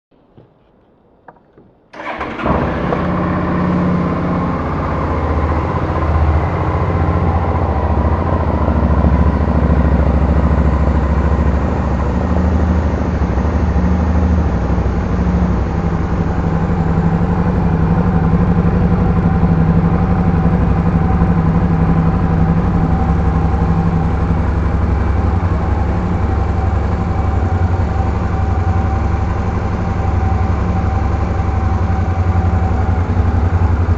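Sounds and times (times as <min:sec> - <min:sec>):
motorcycle engine idling: 0:02.0 - 0:33.9.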